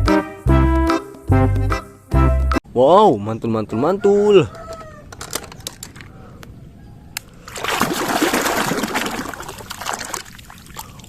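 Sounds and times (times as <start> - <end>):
toys clicking: 5.1 - 6.1
water splashing: 7.4 - 11.0.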